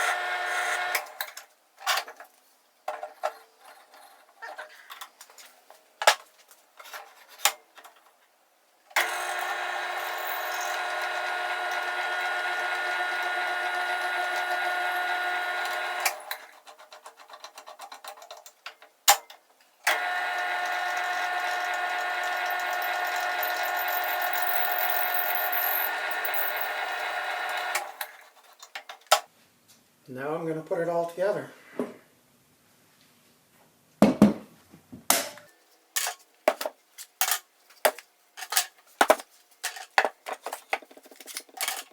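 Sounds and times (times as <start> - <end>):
power tool motor running: 0.0 - 1.2, 9.0 - 16.5, 19.9 - 28.4
handling clicks and knocks: 36.0 - 41.9.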